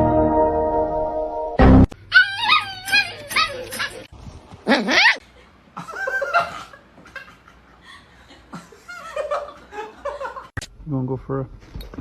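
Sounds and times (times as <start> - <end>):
person laughing: 3.6 - 5.2.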